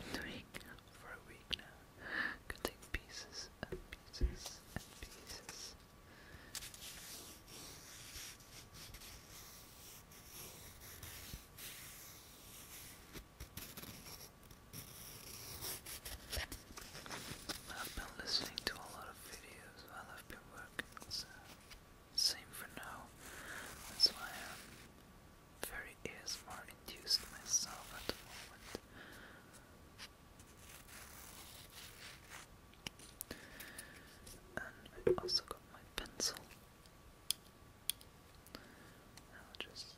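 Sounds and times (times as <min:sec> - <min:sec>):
faint scratching: 0:30.0 - 0:33.2.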